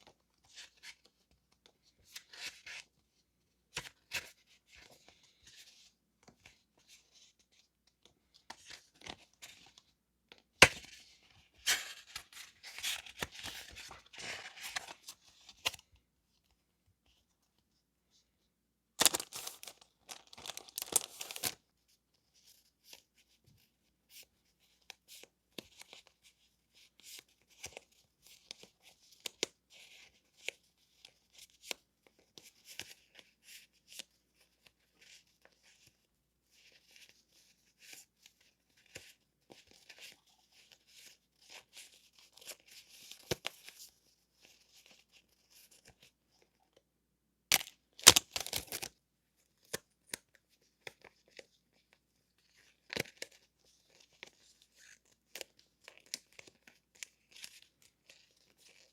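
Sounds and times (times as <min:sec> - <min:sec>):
paper packaging rustling: 0:11.5 - 0:15.8, 0:19.0 - 0:21.6.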